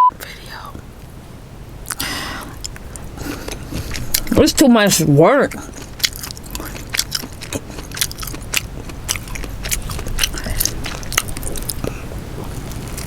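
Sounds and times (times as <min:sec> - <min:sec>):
chewing: 0:01.9 - 0:04.4, 0:05.5 - 0:13.0.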